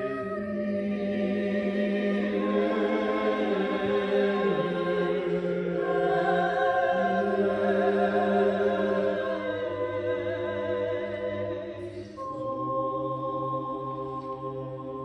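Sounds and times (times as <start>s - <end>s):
voices singing devotional chant: 0.0s - 15.0s.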